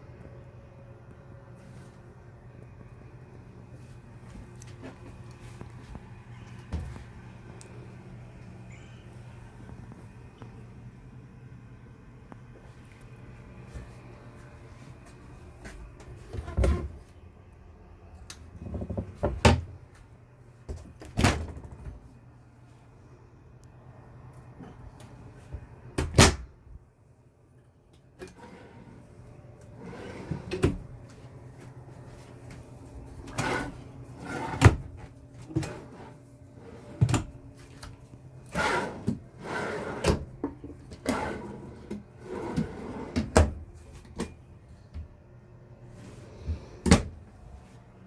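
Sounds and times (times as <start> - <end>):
cupboard doors and drawers shutting: 16.3 - 17.0, 33.2 - 36.0, 38.6 - 40.3.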